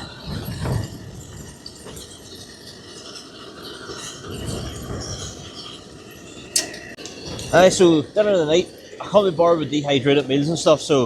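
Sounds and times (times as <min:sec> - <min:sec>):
petrol stove burning: 0:00.0 - 0:11.0
wind buffeting tent: 0:00.0 - 0:11.0.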